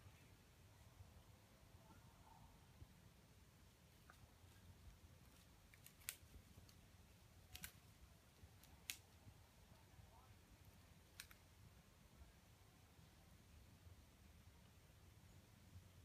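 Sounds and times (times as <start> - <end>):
faint sharp clicks: 7.5 - 7.9, 11.1 - 11.4.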